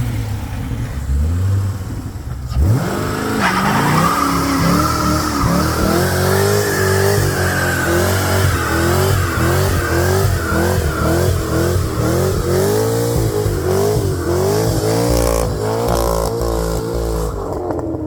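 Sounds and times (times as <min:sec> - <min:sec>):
car engine revving: 0:00.0 - 0:18.0
tyre squeal: 0:03.4 - 0:12.0.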